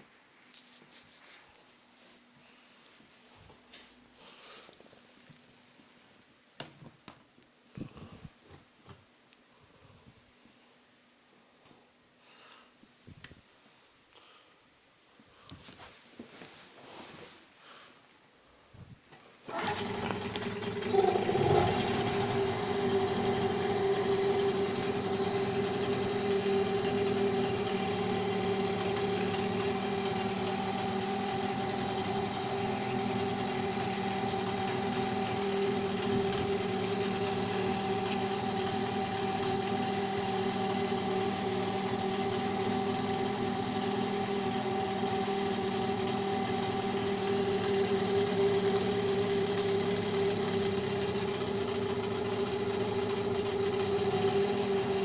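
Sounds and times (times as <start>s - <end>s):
engine idling: 19.5s - 55.0s.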